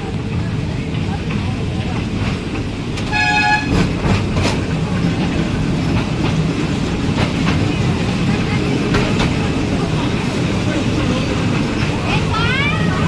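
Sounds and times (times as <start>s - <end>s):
toy train horn toot: 3.1s - 3.8s.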